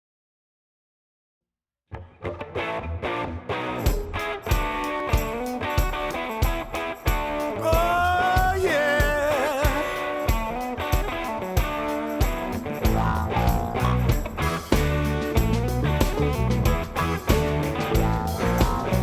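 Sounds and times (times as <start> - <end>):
lead guitar bending: 2.0 - 19.0
rock music with guitar: 2.0 - 19.0
steady drum beat: 3.9 - 19.0.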